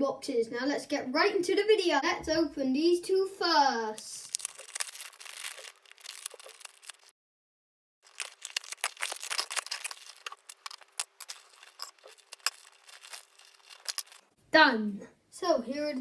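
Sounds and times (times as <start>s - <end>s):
packaging crinkling and crackling: 4.0s - 7.2s, 8.0s - 14.4s.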